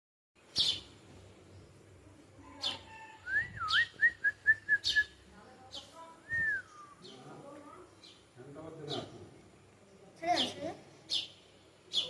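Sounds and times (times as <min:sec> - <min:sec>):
sparrow chirping: 0:00.4 - 0:12.0.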